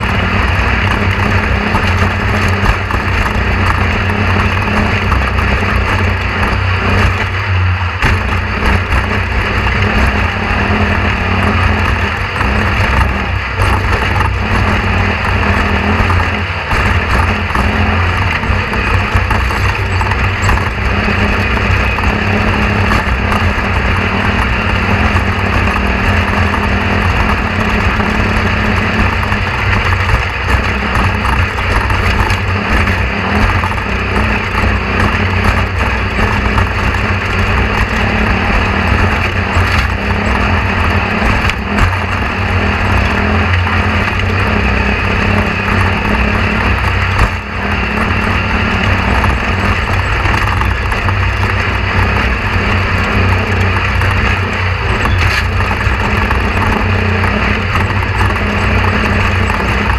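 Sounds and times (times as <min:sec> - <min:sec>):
low engine drone: 0:00.0 - 0:59.9.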